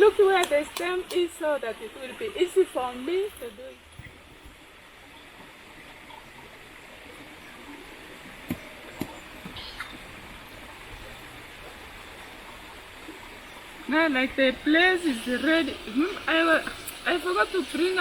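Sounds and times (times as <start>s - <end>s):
river water flowing: 0.0s - 18.0s.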